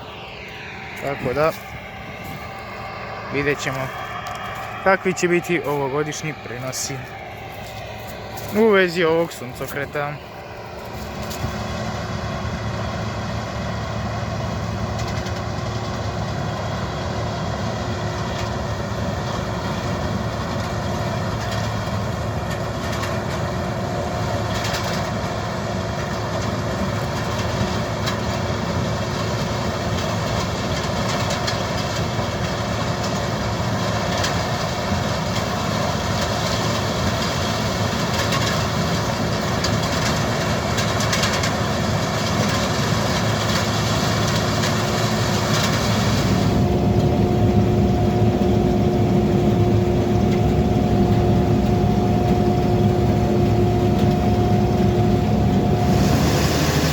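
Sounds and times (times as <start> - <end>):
combine harvester engine hum: 0.0 - 56.9
threshing machinery rattle: 35.3 - 46.4.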